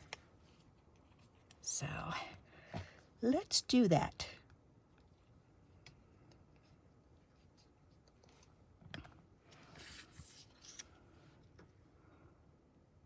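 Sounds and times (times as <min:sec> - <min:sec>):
paper sliding: 0:09.6 - 0:10.9.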